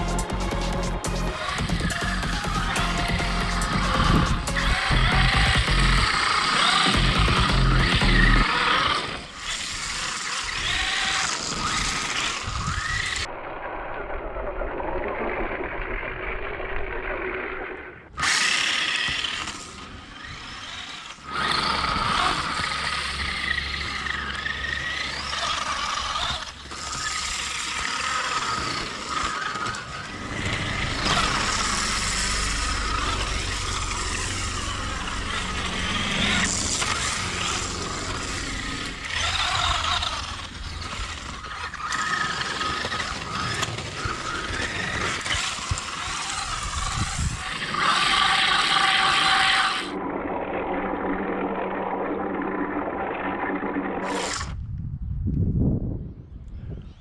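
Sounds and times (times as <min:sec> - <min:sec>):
electric motor whining: 0:00.0 - 0:13.3, 0:17.7 - 0:50.0.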